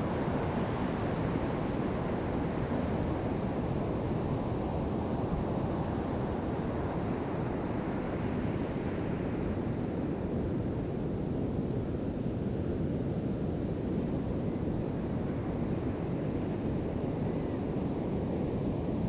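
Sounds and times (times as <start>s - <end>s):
wind rumbling on microphone: 0.0s - 19.0s.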